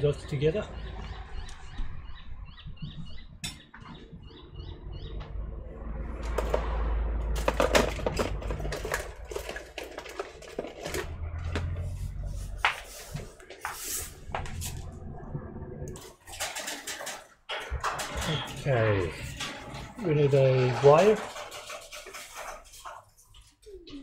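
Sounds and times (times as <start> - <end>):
low hum: 4.0 - 10.3, 14.0 - 16.6.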